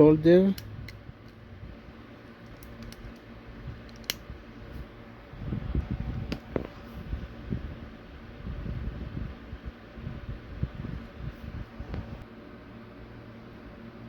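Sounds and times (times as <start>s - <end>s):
sharp click: 3.9s - 4.2s.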